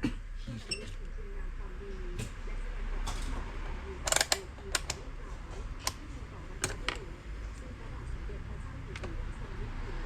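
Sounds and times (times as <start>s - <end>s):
faint background voice: 0.0s - 10.0s
mechanical clicks and clacks: 4.0s - 5.0s.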